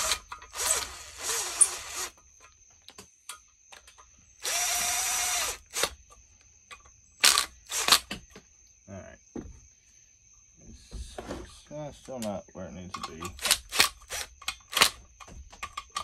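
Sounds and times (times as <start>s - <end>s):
power drill whirring: 0.0s - 2.2s, 4.4s - 6.0s, 7.2s - 8.1s, 13.4s - 15.0s
tools clicking and clinking: 12.0s - 16.0s.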